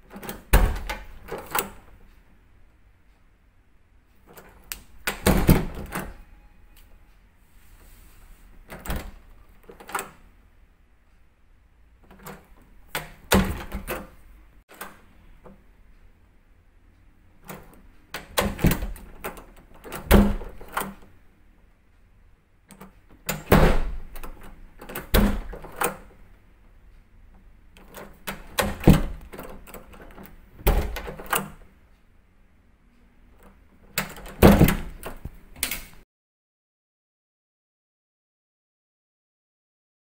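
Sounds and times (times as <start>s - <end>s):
door latch and handle clicks: 0.0s - 2.1s, 4.3s - 6.2s, 8.6s - 10.3s, 12.0s - 15.6s, 17.4s - 21.1s, 22.7s - 26.2s, 27.8s - 31.7s, 33.4s - 36.0s
door thudding shut: 0.2s - 1.7s, 5.0s - 6.2s, 13.0s - 14.1s, 19.9s - 20.9s, 23.3s - 26.0s, 28.3s - 29.2s, 30.6s - 31.5s, 34.0s - 36.0s.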